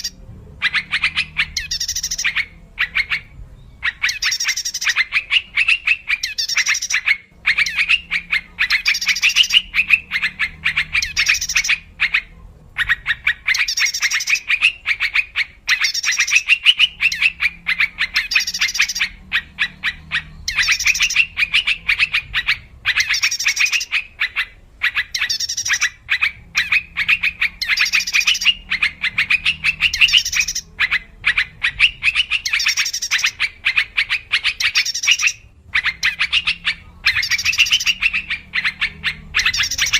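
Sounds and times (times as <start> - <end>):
bird chattering call: 0.0 - 39.9.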